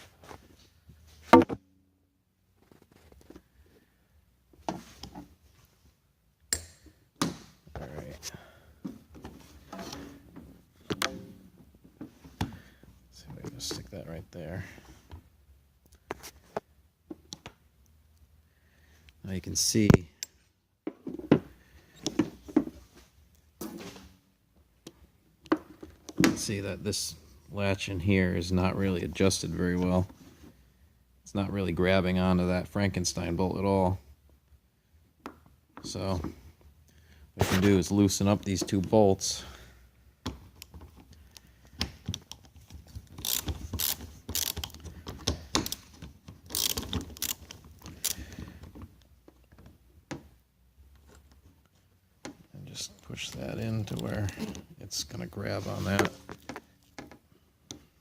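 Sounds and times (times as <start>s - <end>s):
socket ratchet clicking: 43.1s - 45.0s, 45.6s - 48.3s.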